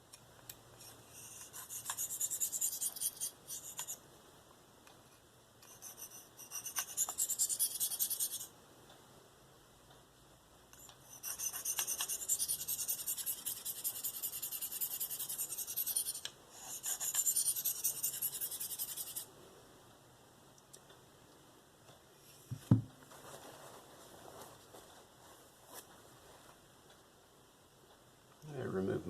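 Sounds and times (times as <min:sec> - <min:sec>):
blade scraping on sharpening stone: 0:00.8 - 0:04.0, 0:05.6 - 0:08.5, 0:11.1 - 0:19.3
low knock: 0:22.5 - 0:23.0.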